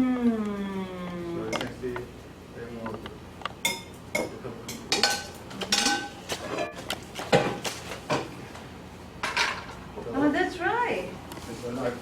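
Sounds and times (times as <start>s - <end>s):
utensils clinking against dishes: 3.6s - 8.3s.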